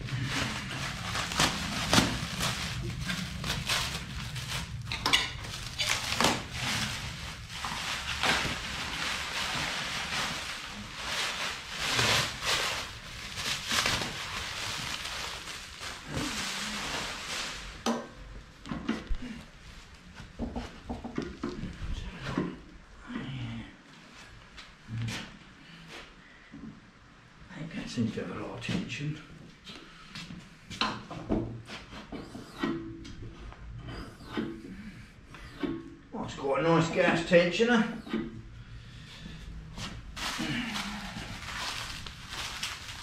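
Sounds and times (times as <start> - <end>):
packaging rustling: 0.0 - 17.8, 39.8 - 43.0.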